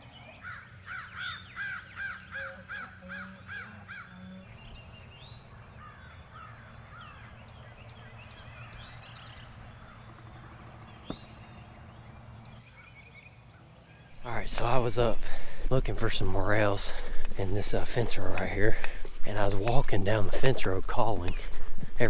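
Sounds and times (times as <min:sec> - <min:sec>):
songbird chirps: 0:00.0 - 0:22.0
crow cawing: 0:00.4 - 0:04.4, 0:05.5 - 0:07.4.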